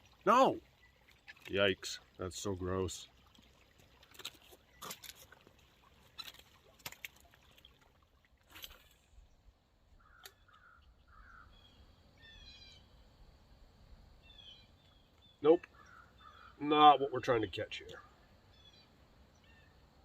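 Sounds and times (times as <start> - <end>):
distant crow cawing: 10.0 - 11.6, 15.7 - 16.6
small bird chirping: 10.0 - 12.9, 14.2 - 16.6, 17.9 - 19.8.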